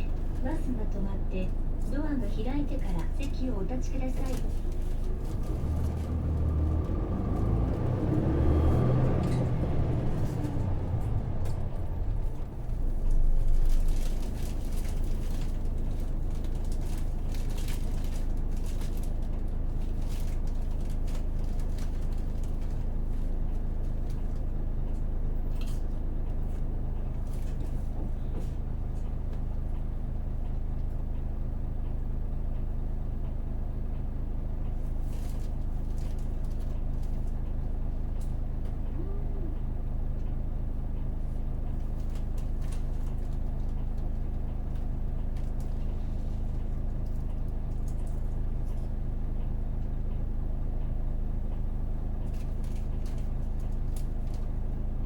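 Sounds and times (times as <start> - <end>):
bus diesel engine idling: 0.0 - 17.3.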